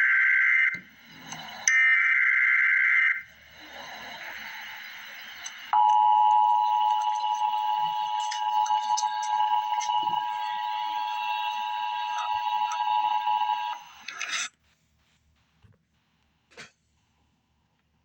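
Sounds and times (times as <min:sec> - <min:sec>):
high warbling data bursts: 0:00.0 - 0:14.0
two-tone attention signal: 0:05.7 - 0:13.8.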